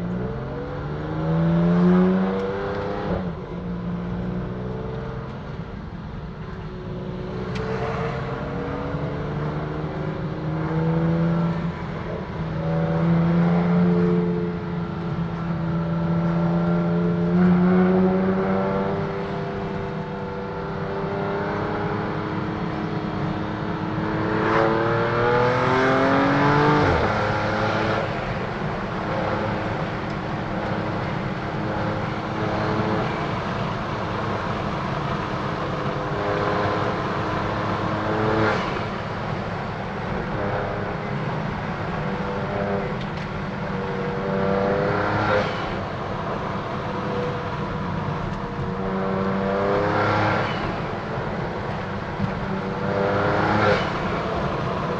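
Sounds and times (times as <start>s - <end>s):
car engine revving: 20.8s - 54.9s.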